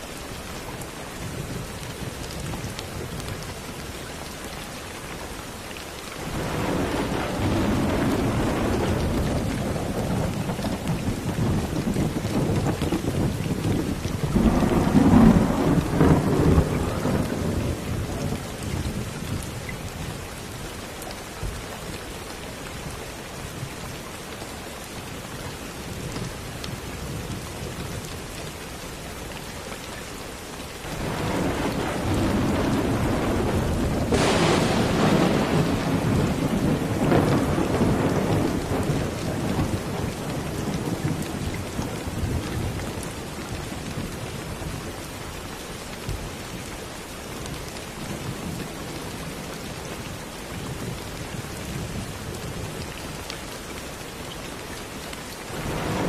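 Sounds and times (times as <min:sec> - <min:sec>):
steady rain: 0:00.0 - 0:56.0
thunder rumble: 0:06.2 - 0:19.5, 0:30.9 - 0:43.0, 0:55.5 - 0:56.0
thunder crack: 0:30.9 - 0:41.0, 0:55.6 - 0:56.0.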